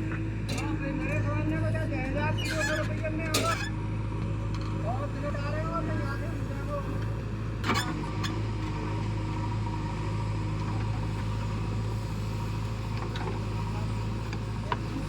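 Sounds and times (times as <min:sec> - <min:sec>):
vehicle engine running: 0:03.1 - 0:15.0.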